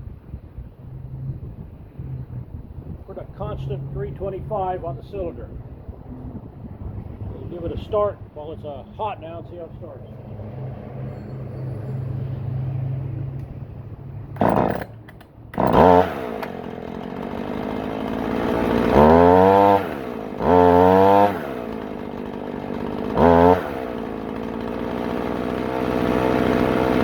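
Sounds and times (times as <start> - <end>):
chainsaw revving unevenly: 14.4 - 27.0.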